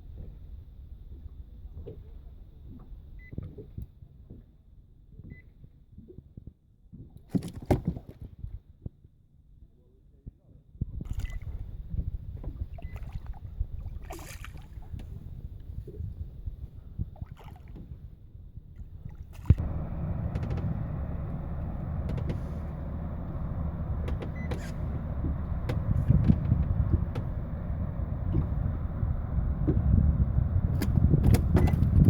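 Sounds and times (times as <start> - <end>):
small boat motor running: 19.4 - 32.0
clicks and knocks: 19.6 - 28.6.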